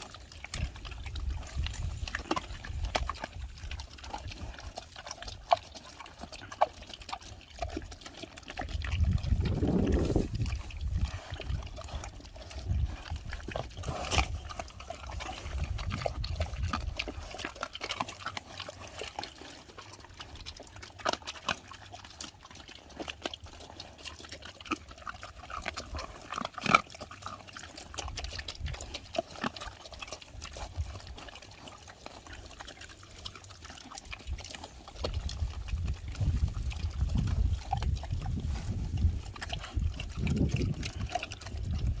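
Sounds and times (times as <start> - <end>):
pigs chewing wet food: 0.0 - 42.0
low rumbling: 8.8 - 14.7.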